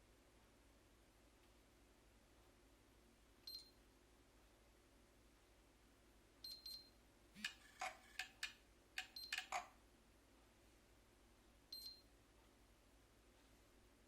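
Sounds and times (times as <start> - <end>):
keypad buttons clicking: 7.4 - 9.7.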